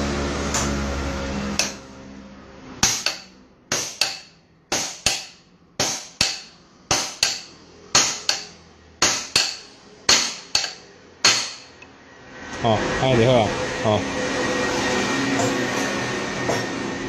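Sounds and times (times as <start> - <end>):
hammer striking steel tool: 1.6 - 1.9, 2.8 - 11.8, 15.4 - 16.8.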